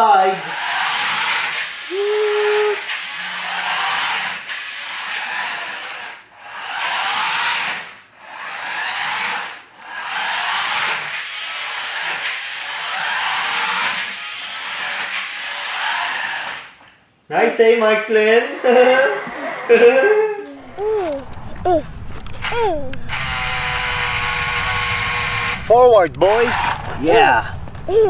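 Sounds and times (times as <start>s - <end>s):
toy car motor whirring: 20.7s - 28.0s.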